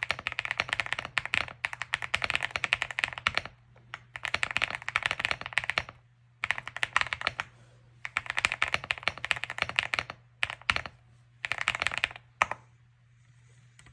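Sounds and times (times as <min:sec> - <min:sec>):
fast typing on mechanical keyboard: 0:00.0 - 0:12.6.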